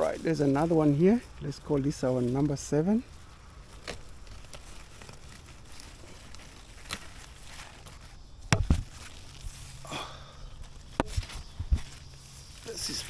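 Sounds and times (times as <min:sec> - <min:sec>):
handling noises: 0:01.9 - 0:13.0
dull thumps: 0:08.5 - 0:09.2.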